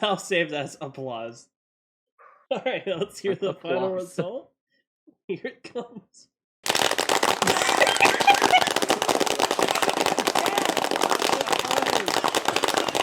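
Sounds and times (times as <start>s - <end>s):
crowd applause: 6.7s - 13.0s
voices calling out: 7.7s - 13.0s.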